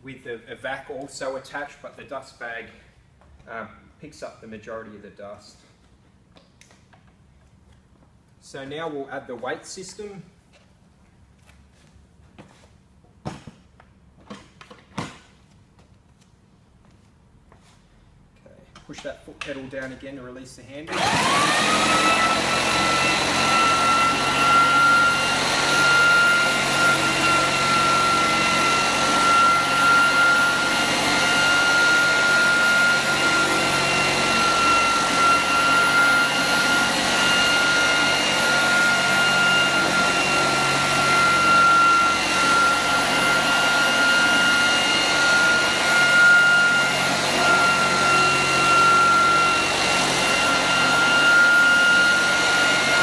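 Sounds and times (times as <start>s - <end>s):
floor sander high whine: 20.9s - 53.0s.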